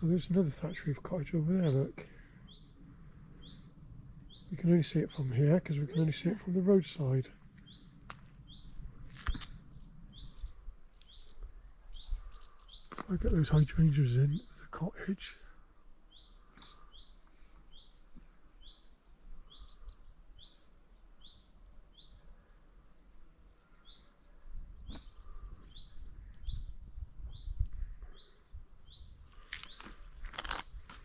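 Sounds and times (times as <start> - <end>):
songbird chirping: 0.0 - 31.0
low rumble: 1.3 - 10.9.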